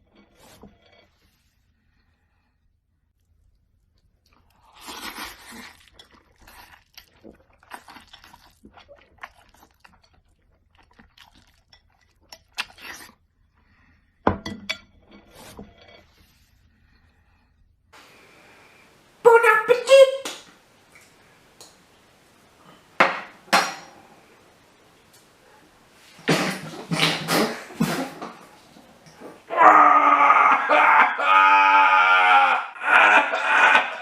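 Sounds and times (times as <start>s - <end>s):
crunching and chewing: 3.2s - 13.2s
tableware clinking and knocking: 23.0s - 24.2s.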